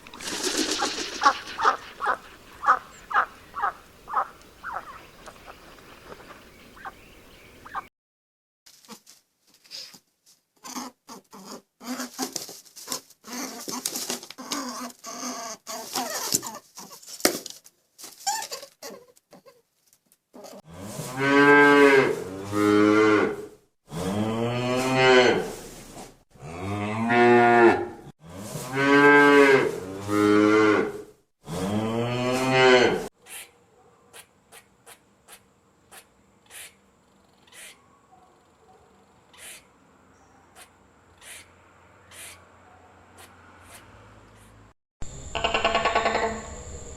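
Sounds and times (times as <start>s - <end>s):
cattle mooing: 28.7s - 33.1s.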